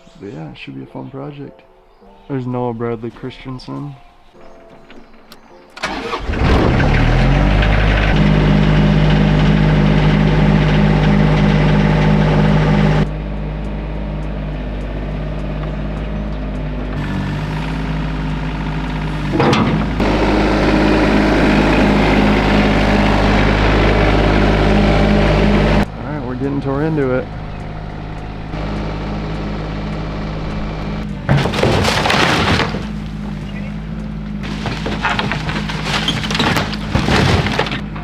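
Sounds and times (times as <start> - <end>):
excavator diesel engine running: 2.9 - 38.0.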